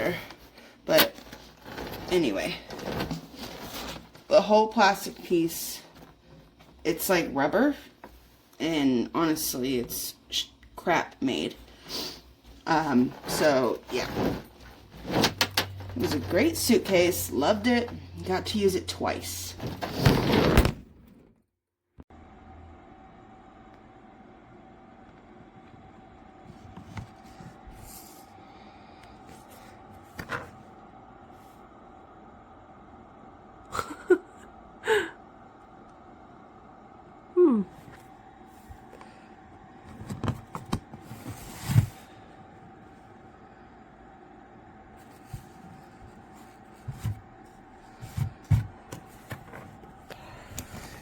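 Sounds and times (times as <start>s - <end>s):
faint steady hum: 22.1s - 51.0s.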